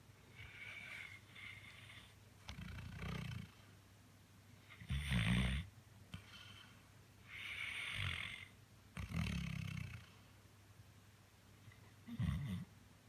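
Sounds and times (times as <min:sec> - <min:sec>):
breathy hiss of breath: 0:00.2 - 0:02.2, 0:06.2 - 0:08.5
dog snoring: 0:00.3 - 0:03.6, 0:04.7 - 0:06.6, 0:07.3 - 0:10.1, 0:12.0 - 0:12.7.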